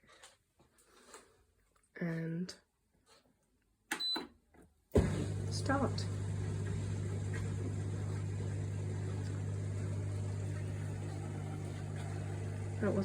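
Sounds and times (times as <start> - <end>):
dishwasher pump motor humming: 5.0 - 13.0.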